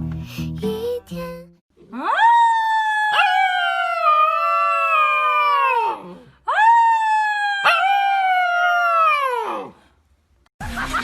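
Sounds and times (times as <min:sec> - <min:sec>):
dog howling: 0:02.0 - 0:09.7.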